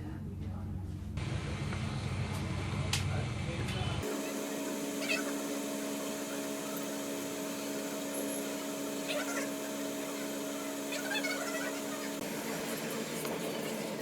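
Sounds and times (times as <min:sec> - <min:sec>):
hot-air blower humming: 0:04.0 - 0:14.0.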